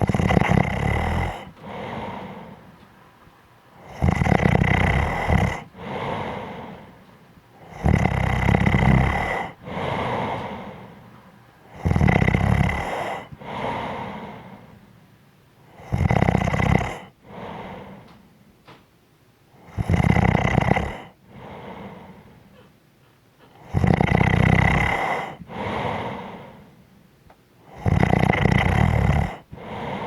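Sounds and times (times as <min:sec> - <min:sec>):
person snoring: 0:00.0 - 0:02.7, 0:03.8 - 0:07.0, 0:07.6 - 0:11.1, 0:11.7 - 0:14.8, 0:15.7 - 0:18.2, 0:19.6 - 0:22.4, 0:23.6 - 0:26.8, 0:27.6 - 0:30.0
quiet breath: 0:00.0 - 0:16.0, 0:16.6 - 0:18.6, 0:20.6 - 0:30.0.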